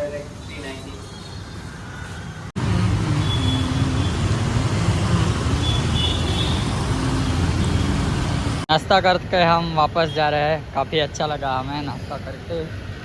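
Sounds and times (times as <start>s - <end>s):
vehicle engines running: 2.5s - 9.2s.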